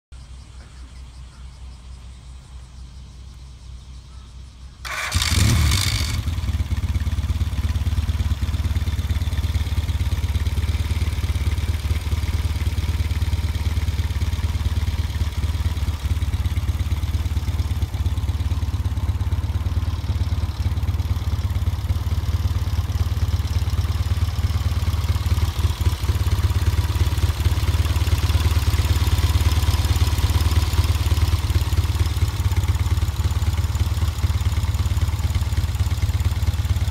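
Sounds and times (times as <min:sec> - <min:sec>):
motorcycle engine starting and running: 0:04.7 - 0:36.9.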